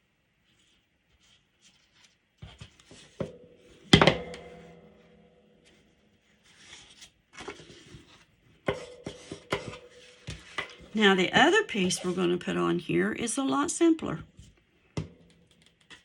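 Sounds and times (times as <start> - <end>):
hard object knocking down: 3.9 - 4.8
cardstock rustling: 6.4 - 8.3.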